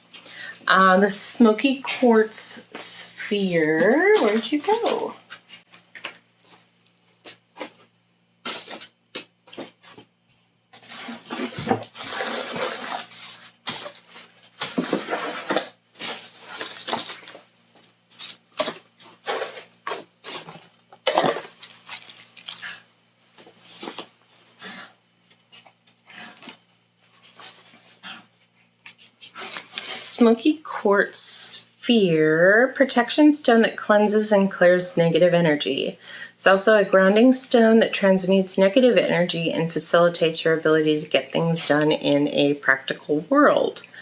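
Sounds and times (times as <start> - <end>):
paper packing rustling: 10.8 - 22.8.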